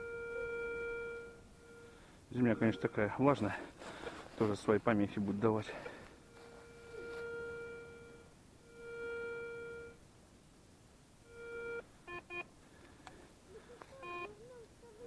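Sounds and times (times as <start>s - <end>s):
wavering tone: 0.0s - 3.5s, 5.8s - 10.0s
metal detector beeping: 0.0s - 3.7s, 4.5s - 10.0s, 11.3s - 12.5s, 14.0s - 14.4s.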